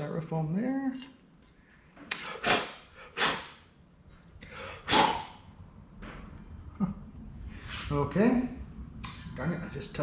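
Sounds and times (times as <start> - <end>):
breath puffs blown hard: 2.2 - 3.6, 4.4 - 5.4.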